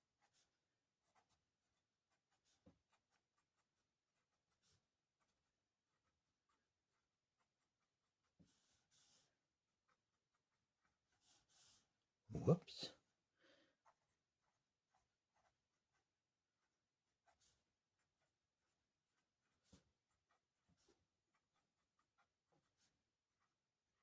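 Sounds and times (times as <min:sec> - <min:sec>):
pencil scratching on paper: 0:00.0 - 0:24.0.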